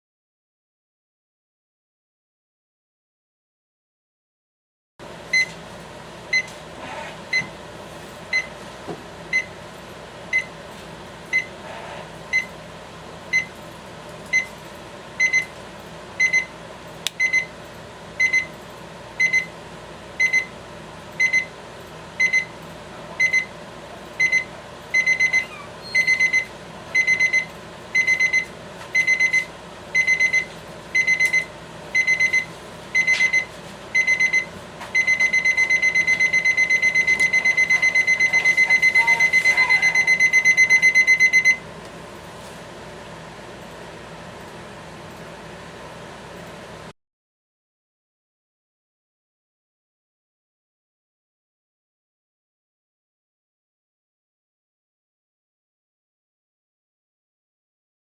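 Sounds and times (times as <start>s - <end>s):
alarm clock beeping: 25.0s - 25.4s, 26.0s - 27.4s, 28.0s - 28.4s, 29.0s - 32.4s, 33.0s - 41.6s.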